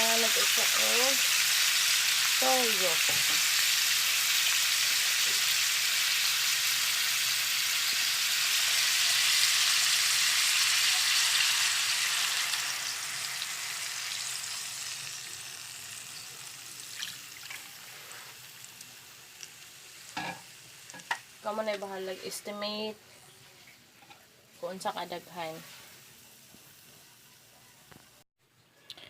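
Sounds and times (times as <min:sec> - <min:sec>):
squid sizzling in hot oil: 0:00.0 - 0:22.6.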